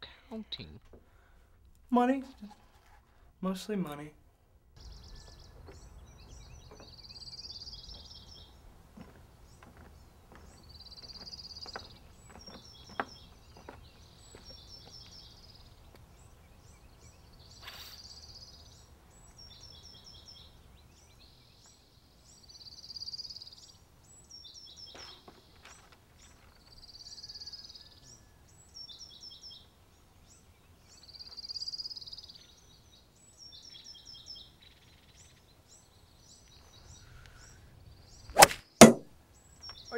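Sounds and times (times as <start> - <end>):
birds chirping: 0.0 - 4.0, 4.8 - 39.9.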